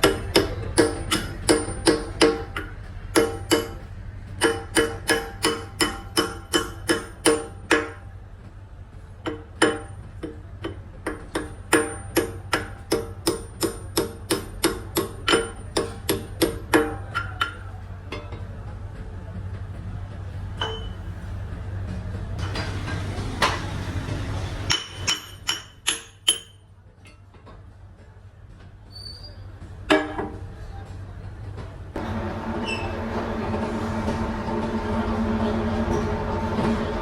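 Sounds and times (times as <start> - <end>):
hammer striking metal: 0.0 - 8.1, 9.2 - 18.4, 20.6 - 21.0, 24.7 - 27.2, 29.9 - 30.4.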